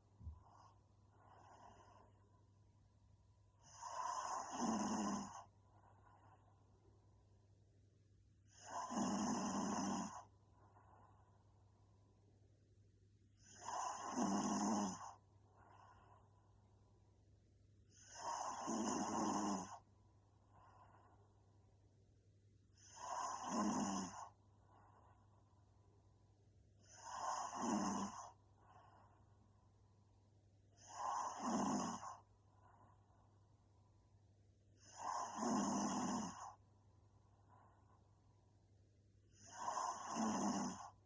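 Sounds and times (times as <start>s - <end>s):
woman snoring: 3.6s - 5.5s, 8.5s - 10.3s, 13.4s - 16.2s, 17.9s - 19.8s, 22.7s - 24.4s, 26.8s - 28.9s, 30.8s - 32.3s, 34.8s - 36.6s, 39.3s - 41.0s.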